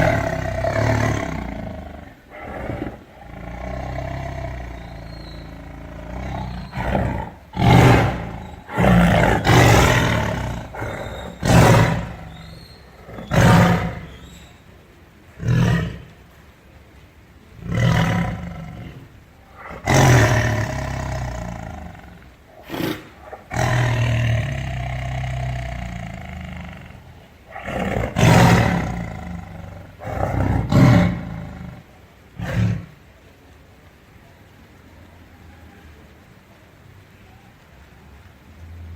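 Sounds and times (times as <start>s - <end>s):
big cat roaring: 0.0s - 14.5s, 15.3s - 16.2s, 17.6s - 33.1s.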